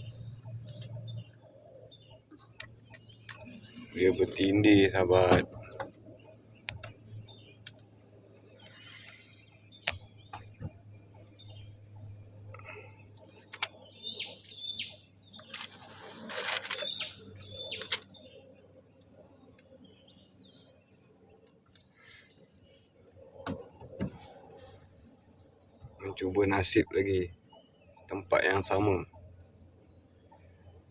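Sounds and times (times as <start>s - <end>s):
birds chirping: 0.0s - 30.9s
insects buzzing: 0.0s - 30.9s
rustle: 15.3s - 18.4s
sharp clicks: 15.4s - 18.1s.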